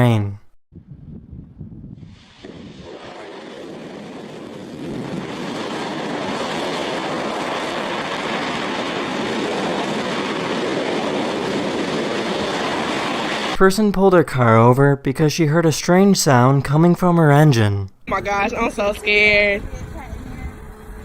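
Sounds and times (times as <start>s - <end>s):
rocket engine roaring: 1.8s - 13.6s.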